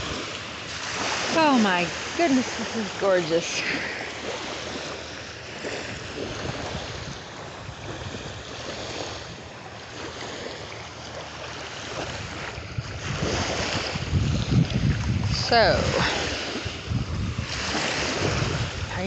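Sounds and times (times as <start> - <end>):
small waves washing on beach: 0.0 - 19.0
wind buffeting microphone: 5.6 - 10.3, 11.9 - 19.0.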